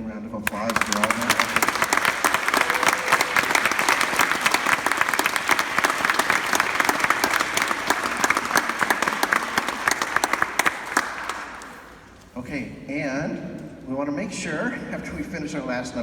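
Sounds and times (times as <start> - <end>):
audience applauding: 0.4 - 12.2.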